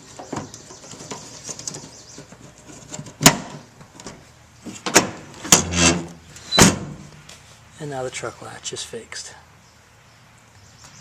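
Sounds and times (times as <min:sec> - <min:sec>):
handling noises: 0:00.0 - 0:07.6.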